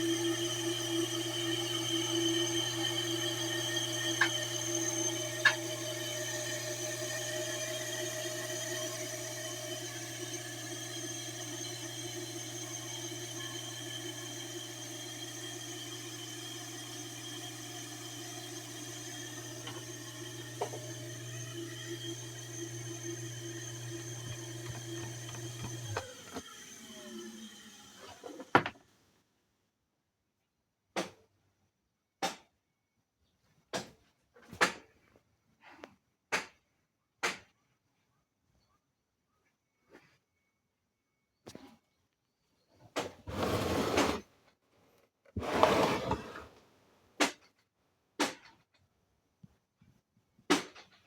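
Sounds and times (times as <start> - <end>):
motor winding down whine: 0.0 - 28.5
pump motor humming and whining: 0.0 - 28.7
scraping and rustling: 43.3 - 44.2.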